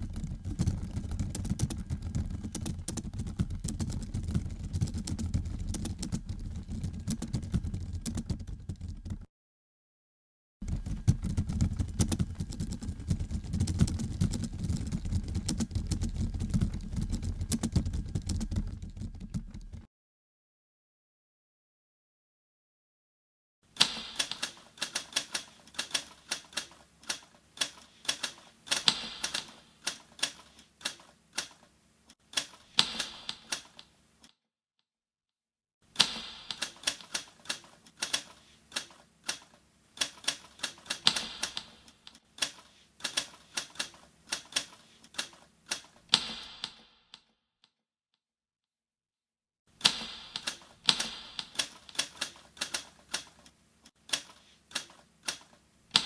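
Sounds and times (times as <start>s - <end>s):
typewriter keys clacking: 0.0s - 9.3s, 10.6s - 19.9s, 23.8s - 31.7s, 32.3s - 33.9s, 36.0s - 46.8s, 49.8s - 53.5s.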